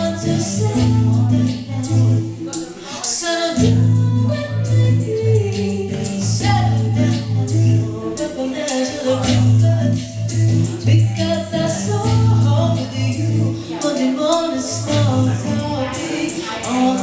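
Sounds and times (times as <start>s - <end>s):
strong steady bass: 0.0s - 2.3s, 9.2s - 13.7s
live band playing: 0.0s - 17.0s
person singing: 0.0s - 17.0s.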